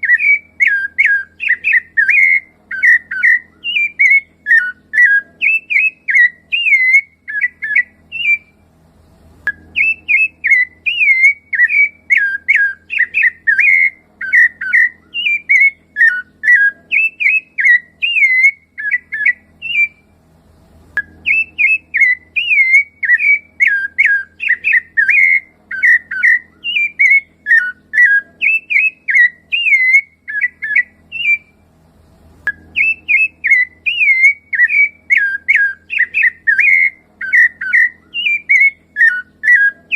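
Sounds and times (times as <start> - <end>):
thrush singing fluty whistles: 0.0 - 8.6, 9.5 - 20.1, 21.2 - 31.6, 32.5 - 39.9.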